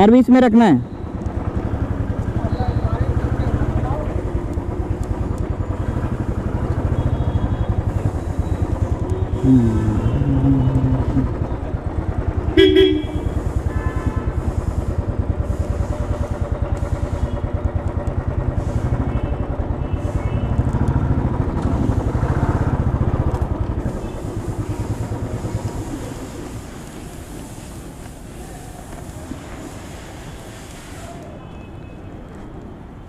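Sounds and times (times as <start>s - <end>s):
vehicle horn honking: 12.5s - 14.4s.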